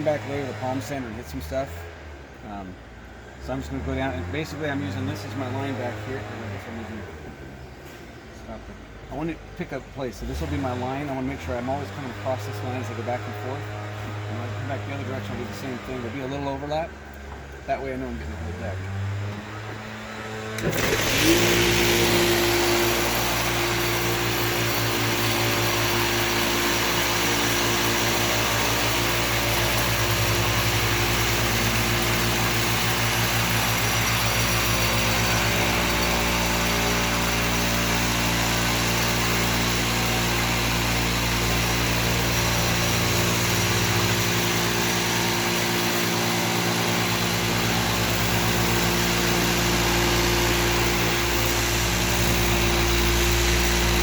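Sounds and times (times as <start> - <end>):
electric floor sander running: 19.1 - 54.0.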